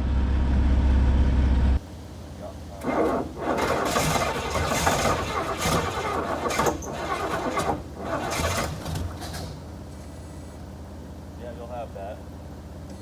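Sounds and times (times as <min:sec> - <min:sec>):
car engine cranking by starter: 0:02.7 - 0:09.8.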